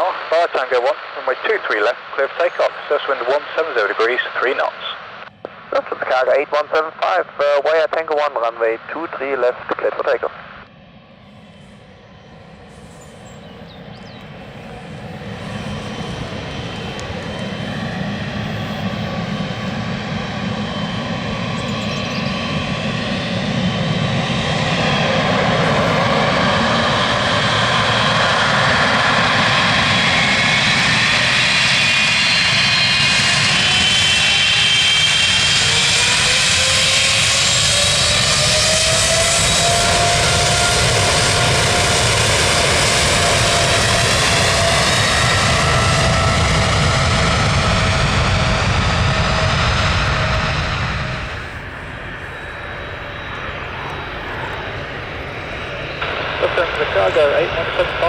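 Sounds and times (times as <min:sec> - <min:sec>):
jet engines at takeoff power: 0:00.0 - 0:58.0
rising whining tones: 0:10.5 - 0:58.0.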